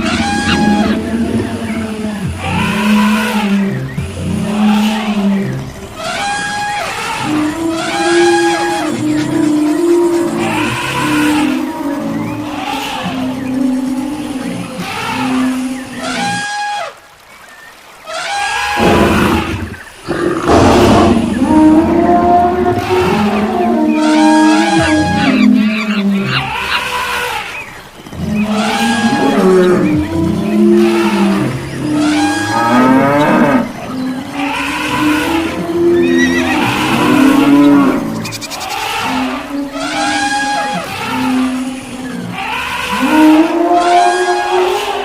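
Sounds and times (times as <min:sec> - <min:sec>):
running herd rumble: 0:00.0 - 0:16.3, 0:18.8 - 0:45.0
large animals bellowing: 0:00.0 - 0:16.6, 0:18.5 - 0:45.0.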